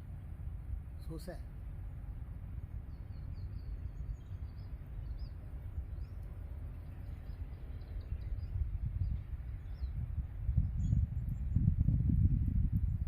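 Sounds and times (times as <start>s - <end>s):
small birds chirping: 1.0s - 11.9s
wind on microphone: 2.7s - 13.0s.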